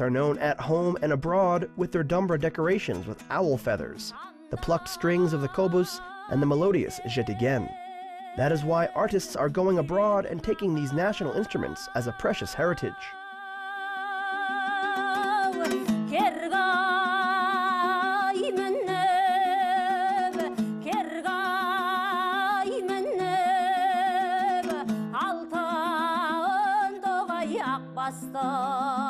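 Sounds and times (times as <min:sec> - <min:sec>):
person singing folk song: 0:00.0 - 0:29.0
plucked strings: 0:14.2 - 0:29.0.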